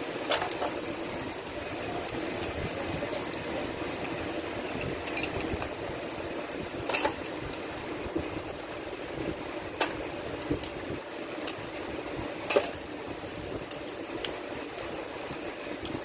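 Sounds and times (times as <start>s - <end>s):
metal tools clinking: 5.0s - 5.4s.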